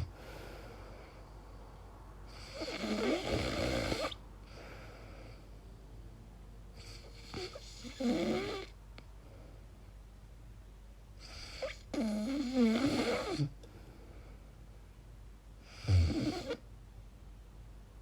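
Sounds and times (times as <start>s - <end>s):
woman snoring: 2.3s - 4.2s, 6.8s - 8.8s, 11.3s - 13.6s, 15.7s - 16.6s.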